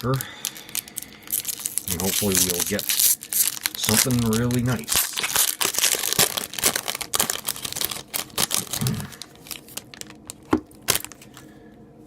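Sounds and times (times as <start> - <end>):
wrapper tearing and crinkling: 0.0 - 11.3.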